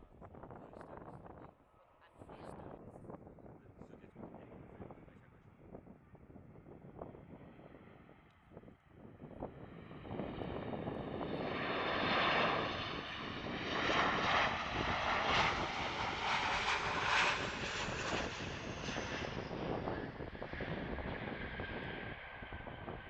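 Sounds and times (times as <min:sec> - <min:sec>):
jet engine roar: 0:09.5 - 0:23.0.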